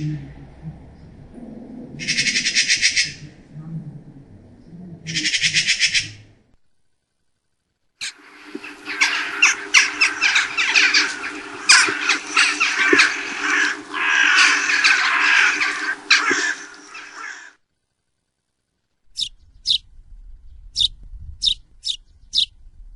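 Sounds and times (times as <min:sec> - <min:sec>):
low steady hum: 0:00.0 - 0:22.9
harsh scratchy bird calls: 0:02.0 - 0:03.3, 0:05.1 - 0:06.2, 0:08.0 - 0:17.6, 0:19.1 - 0:19.9, 0:20.7 - 0:22.6.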